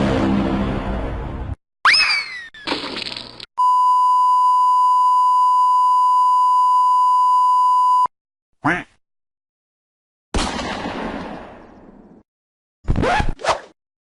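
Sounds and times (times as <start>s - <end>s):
long electronic censor beep: 3.6s - 8.1s.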